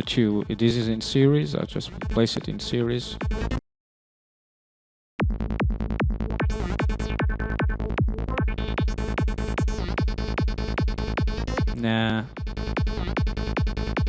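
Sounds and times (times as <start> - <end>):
kick drum with bass: 2.0 - 3.6, 5.2 - 14.0
percussive dark synth lead: 5.2 - 14.0.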